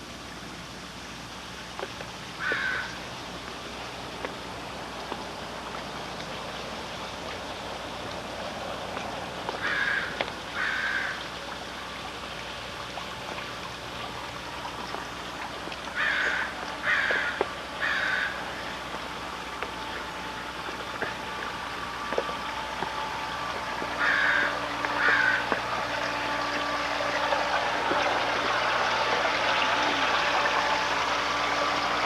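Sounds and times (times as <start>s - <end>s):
bird calling: 2.4s - 3.0s, 9.6s - 11.2s, 15.9s - 18.8s, 23.6s - 25.6s.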